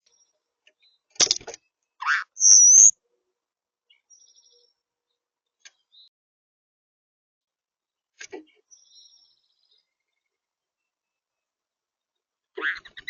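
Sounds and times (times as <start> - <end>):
bird chirping: 0.0 - 2.9, 3.9 - 6.1, 8.3 - 13.0.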